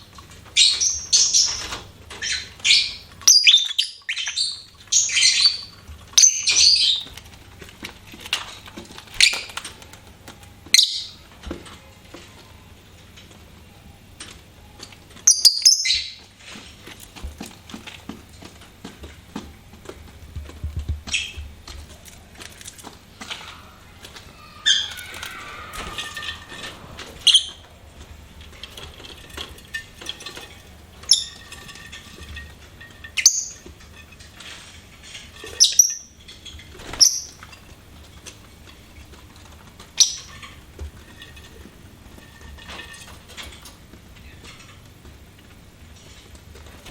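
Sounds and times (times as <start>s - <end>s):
high-pitched bird chirps: 15.3s - 16.2s.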